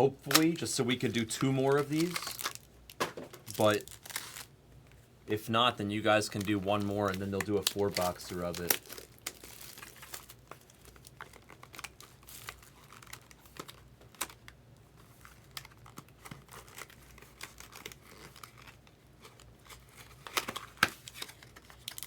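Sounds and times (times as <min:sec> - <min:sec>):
plastic wrap crinkling: 0:00.2 - 0:04.5, 0:05.4 - 0:22.0
cardboard rustling: 0:00.3 - 0:04.5, 0:06.0 - 0:14.4.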